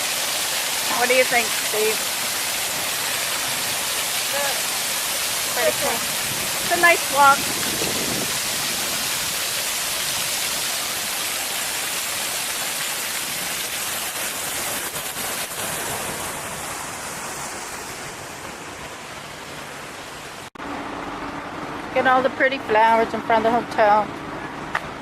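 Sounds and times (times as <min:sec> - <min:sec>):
water splashing from fountains: 0:00.0 - 0:20.5.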